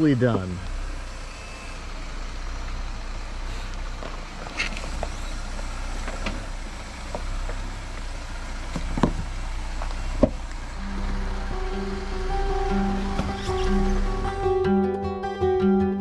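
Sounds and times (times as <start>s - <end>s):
engine running low: 0.0s - 16.0s
knocks and clunks: 3.7s - 14.7s
music: 10.8s - 16.0s.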